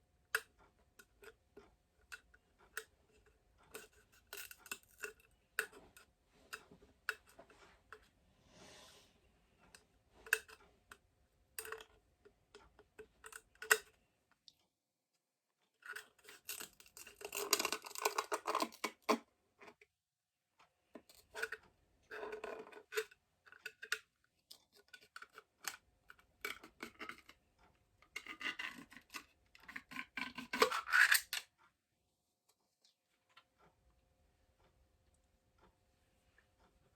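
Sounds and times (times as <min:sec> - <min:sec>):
plastic glowstick scraping and clicking: 0:02.1 - 0:06.6, 0:15.8 - 0:19.2, 0:21.0 - 0:27.4, 0:28.1 - 0:31.5.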